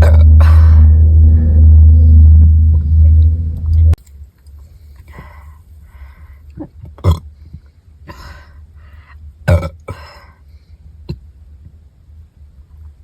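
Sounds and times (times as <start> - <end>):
woman burping: 0.0 - 0.9, 6.6 - 7.2, 9.5 - 10.1
breathy exhales: 0.2 - 3.5.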